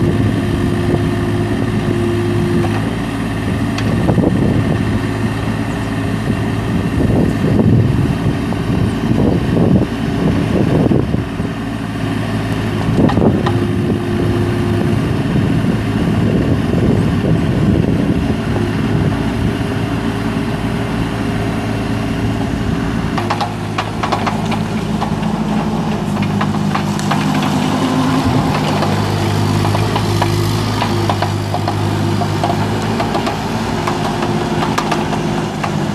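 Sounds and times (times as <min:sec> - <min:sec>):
excavator diesel engine running: 0:00.0 - 0:35.9
sharp knocks: 0:23.1 - 0:35.9.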